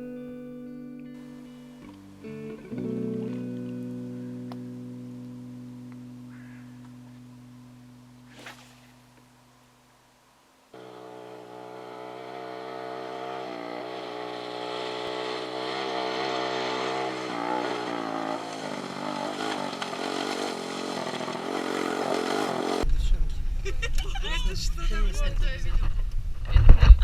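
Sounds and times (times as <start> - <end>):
vehicle engine starting and running: 10.8 - 23.6.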